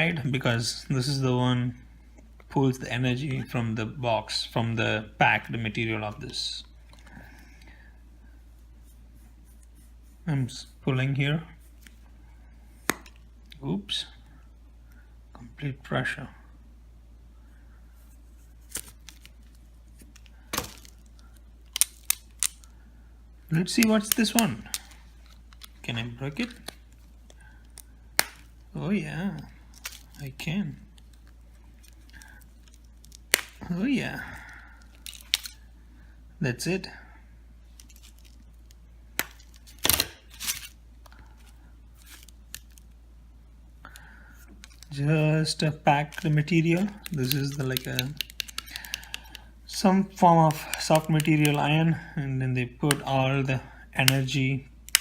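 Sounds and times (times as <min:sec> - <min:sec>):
battery pieces cracking and snapping: 0:20.0 - 0:22.7, 0:23.7 - 0:25.8, 0:26.4 - 0:28.6, 0:29.7 - 0:30.2, 0:31.0 - 0:33.6, 0:34.8 - 0:35.6, 0:37.7 - 0:42.9, 0:43.9 - 0:45.0, 0:46.0 - 0:49.4, 0:50.5 - 0:51.6.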